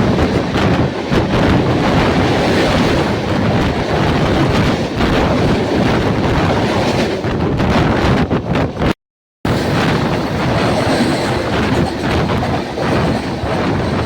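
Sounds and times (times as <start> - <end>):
wind buffeting microphone: 0.0 - 14.0
train rushing past: 9.5 - 14.0.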